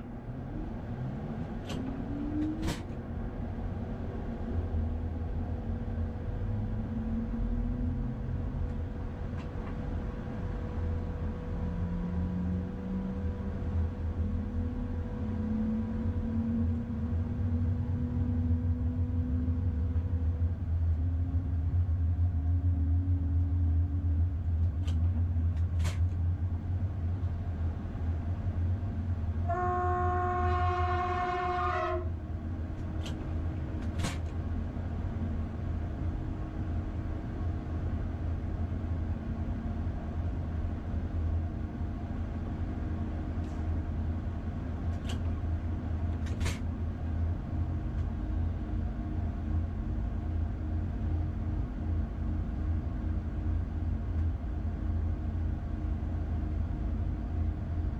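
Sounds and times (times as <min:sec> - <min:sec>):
locomotive engine rumble: 0:00.0 - 0:57.9
locomotive horn blast: 0:29.4 - 0:32.2.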